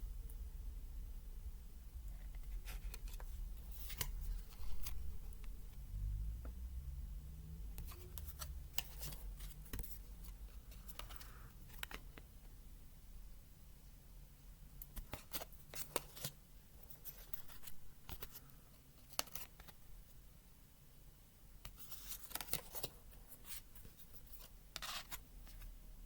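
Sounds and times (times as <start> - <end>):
cards clicking and tapping: 7.8 - 12.2, 19.0 - 19.8.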